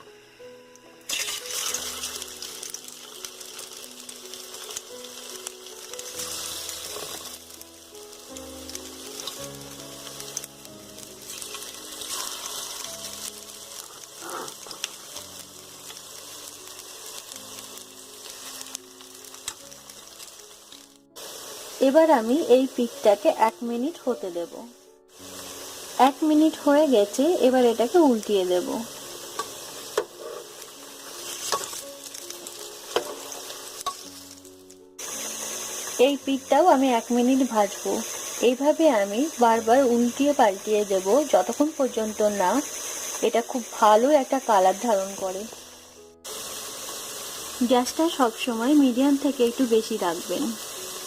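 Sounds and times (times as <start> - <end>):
food deep-frying in hot oil: 1.0 - 51.0.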